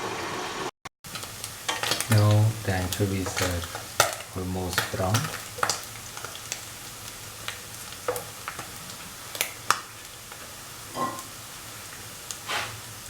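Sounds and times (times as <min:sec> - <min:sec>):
fish sizzling in hot oil: 0:00.1 - 0:13.0
oil popping: 0:01.1 - 0:10.4.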